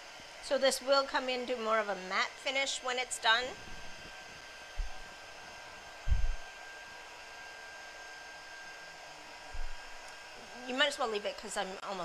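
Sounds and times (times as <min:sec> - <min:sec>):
hot-air dryer blowing: 0:00.0 - 0:12.0
short low thump: 0:04.8 - 0:05.0, 0:06.1 - 0:06.4, 0:09.5 - 0:09.8.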